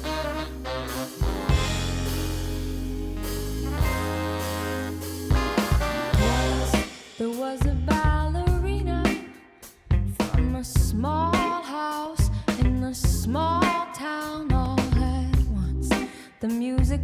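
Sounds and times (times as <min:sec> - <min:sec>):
sustained chord over heavy bass: 0:00.0 - 0:07.0
woman singing with drums: 0:06.2 - 0:09.4, 0:10.2 - 0:17.0.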